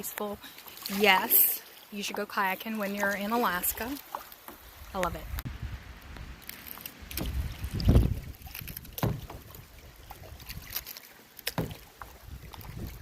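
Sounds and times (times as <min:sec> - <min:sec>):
paddle splashing in water: 0:00.0 - 0:05.4, 0:06.4 - 0:13.0
paddle knocking against boat: 0:08.9 - 0:09.6, 0:11.4 - 0:12.7.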